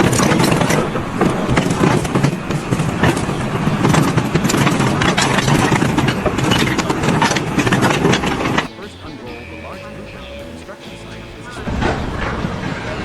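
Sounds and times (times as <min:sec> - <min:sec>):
short knocks and clatters: 0:00.0 - 0:08.7
machine engine running loudly: 0:00.0 - 0:13.0.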